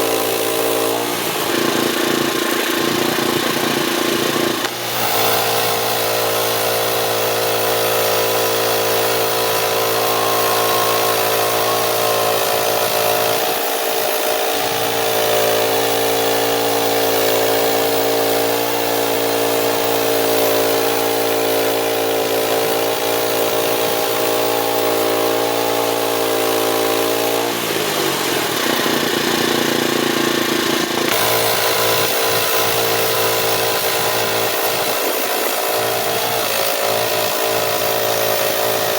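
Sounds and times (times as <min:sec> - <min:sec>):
sawmill petrol engine running: 0:00.0 - 0:38.9.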